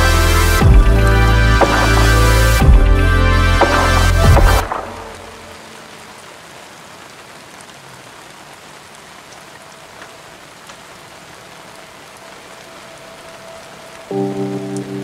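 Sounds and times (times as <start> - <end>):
heavy rain hiss: 0.0 - 15.0
sharp rain drop ticks: 1.6 - 15.0.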